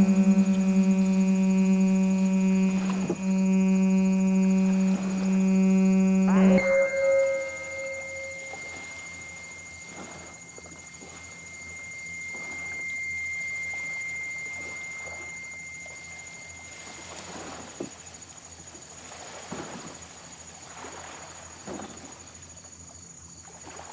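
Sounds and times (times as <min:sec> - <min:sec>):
synthesizer high tone: 0:00.0 - 0:16.6
low hum: 0:00.0 - 0:17.3.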